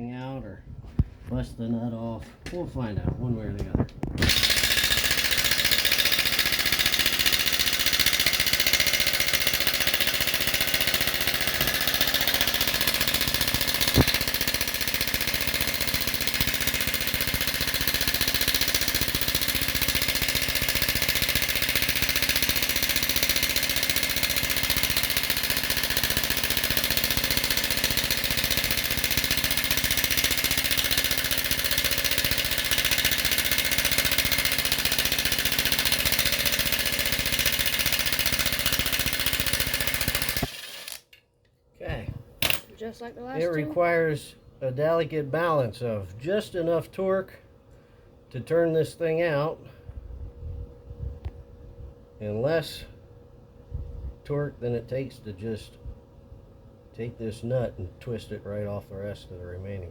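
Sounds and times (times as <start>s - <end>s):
impact wrench hammering: 4.2s - 41.2s, 42.4s - 42.7s
sharp click: 13.9s - 14.2s.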